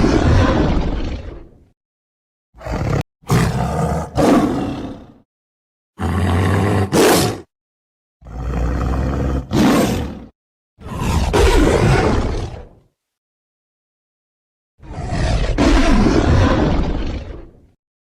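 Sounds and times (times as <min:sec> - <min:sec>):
tiger roaring: 0:02.6 - 0:05.2, 0:06.0 - 0:07.5, 0:08.2 - 0:12.8, 0:14.8 - 0:17.6.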